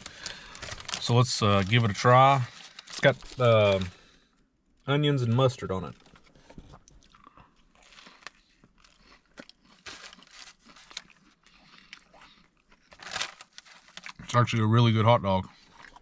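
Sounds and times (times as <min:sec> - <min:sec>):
chewing and crunching food: 0:05.9 - 0:16.0.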